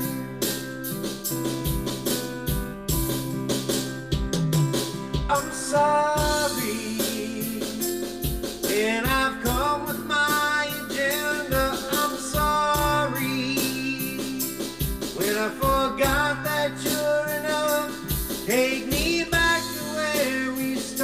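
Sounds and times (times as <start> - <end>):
guitar: 0.0 - 21.0
steady drum beat: 0.0 - 21.0
gospel song singing: 5.3 - 8.0, 8.6 - 14.5, 15.1 - 21.0.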